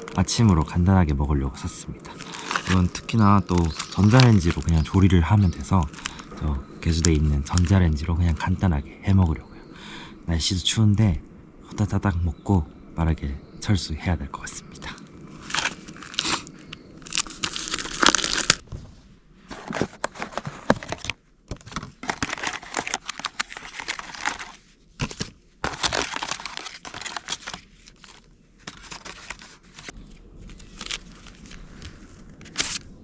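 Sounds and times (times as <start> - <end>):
plastic packaging crinkling: 0.0 - 0.5, 2.0 - 7.8, 14.8 - 18.6, 19.5 - 33.0
plastic packaging tearing: 2.1 - 7.8, 15.4 - 18.6, 19.6 - 33.0.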